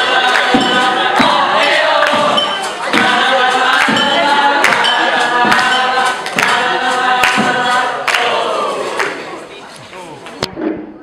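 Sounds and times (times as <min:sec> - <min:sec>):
sharp rhythmic knocks: 0:00.0 - 0:08.6
a cappella group singing: 0:00.0 - 0:09.3.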